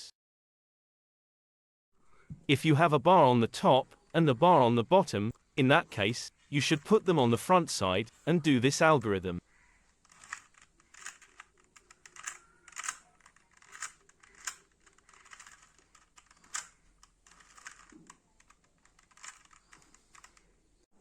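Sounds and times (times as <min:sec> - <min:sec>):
puzzle cube clicking as turned: 0:09.9 - 0:20.5.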